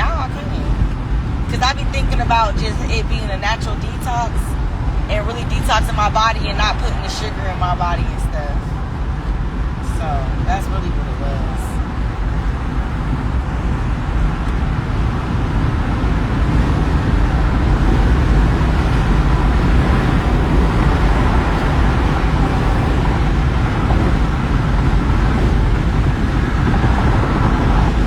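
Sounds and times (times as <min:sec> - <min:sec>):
car road and engine noise: 0:00.0 - 0:28.0.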